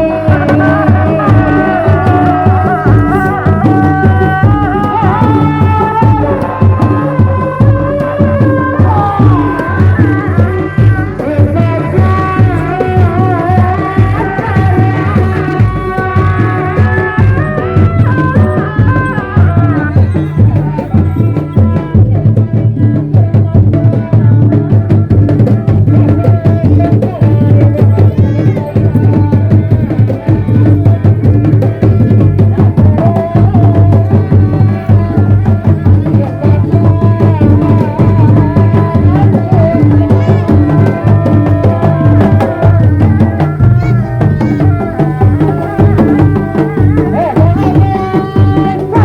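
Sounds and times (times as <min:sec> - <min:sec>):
drums beating: 0:00.0 - 0:49.0
wavering melody: 0:25.4 - 0:49.0.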